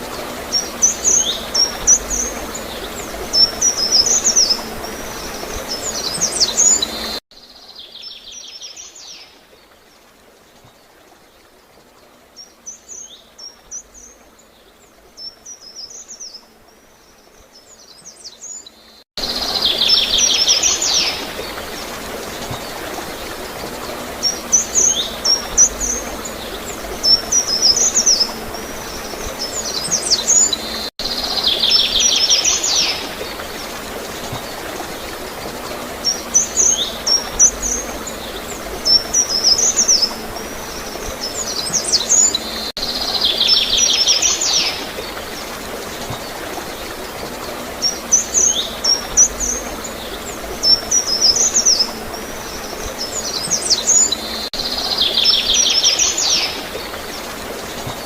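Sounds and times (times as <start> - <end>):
songbirds chirping: 0.0 - 58.0
water gurgling: 19.2 - 58.0.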